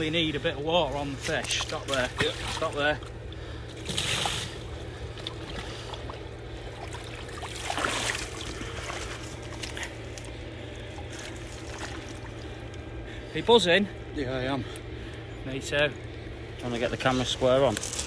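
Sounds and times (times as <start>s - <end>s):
steady low hum: 0.0s - 18.0s
water splashing: 1.0s - 3.2s, 3.8s - 12.6s.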